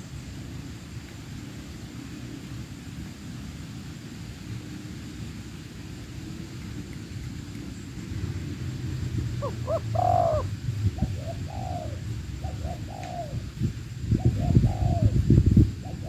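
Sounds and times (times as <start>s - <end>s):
steady low rumble: 0.0s - 16.0s
dove cooing: 9.3s - 13.5s, 14.1s - 15.2s, 15.8s - 16.0s.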